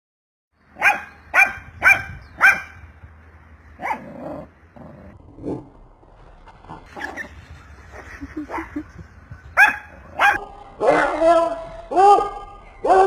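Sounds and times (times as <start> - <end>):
dog barking: 0.8 - 2.8, 3.8 - 4.1, 9.6 - 13.0.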